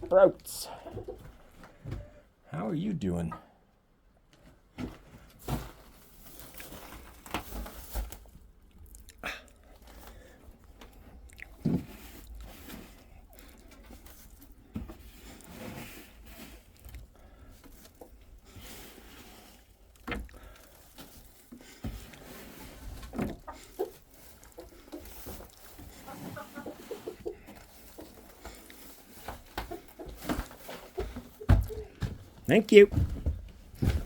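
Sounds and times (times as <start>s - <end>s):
chickens clucking: 0.0s - 1.3s, 22.2s - 32.0s.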